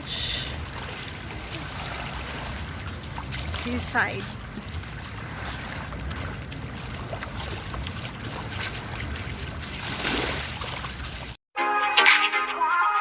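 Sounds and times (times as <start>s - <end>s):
water sounds: 0.0s - 11.4s
music: 11.6s - 13.0s.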